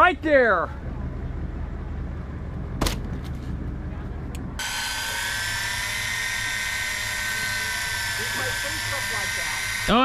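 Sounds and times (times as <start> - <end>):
low rumble: 0.0 - 9.9
electric fishing reel whine: 4.6 - 10.0.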